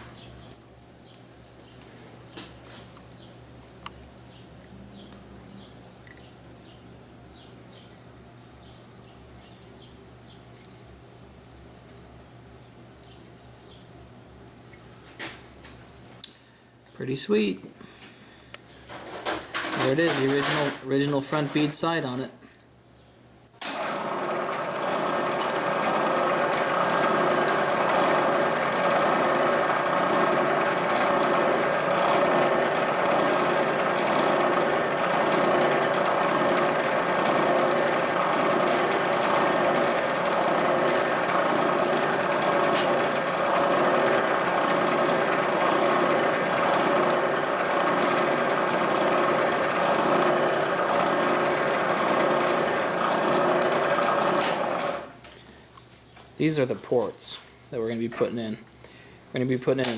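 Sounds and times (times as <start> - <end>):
machine tool grinding: 19.2 - 21.7, 23.7 - 55.1.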